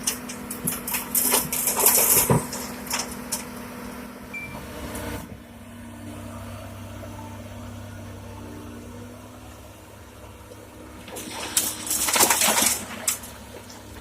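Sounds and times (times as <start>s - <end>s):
rocks clattering: 0.0s - 3.6s, 11.1s - 14.0s
diesel machinery running: 0.0s - 14.0s.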